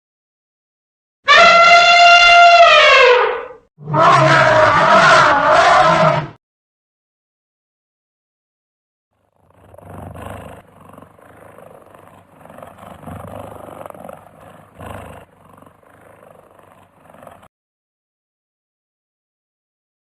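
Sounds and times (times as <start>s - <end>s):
large animal rough calls: 1.3s - 6.4s, 9.2s - 17.5s.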